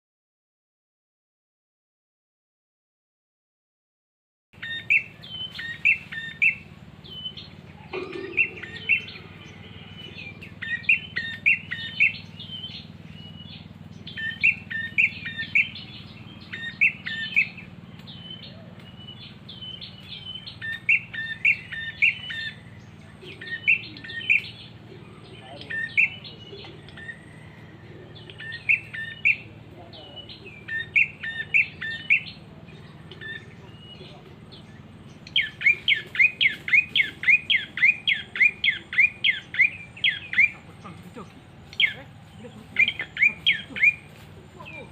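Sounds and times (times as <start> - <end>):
bird sharp chirping calls: 4.6 - 44.9
steady low hum: 4.6 - 44.9.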